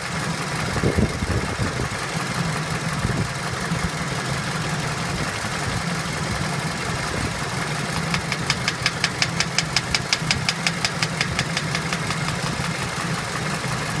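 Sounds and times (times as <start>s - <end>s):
car engine idling: 0.0s - 14.0s
sharp engine knock: 8.1s - 12.4s.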